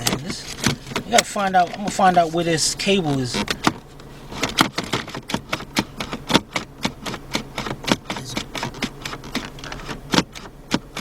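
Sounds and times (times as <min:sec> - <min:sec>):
rapid sharp clicks and taps: 0:04.5 - 0:11.0.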